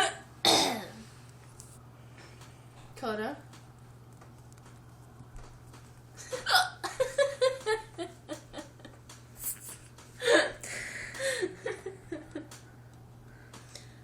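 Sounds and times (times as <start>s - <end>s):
laughing and giggling: 6.2s - 9.1s, 10.2s - 12.6s.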